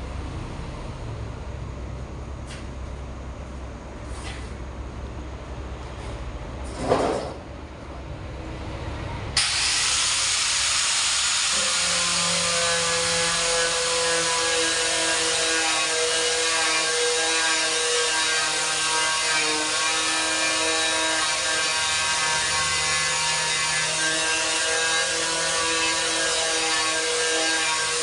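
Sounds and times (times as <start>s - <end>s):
grinder sanding metal: 9.5s - 28.0s.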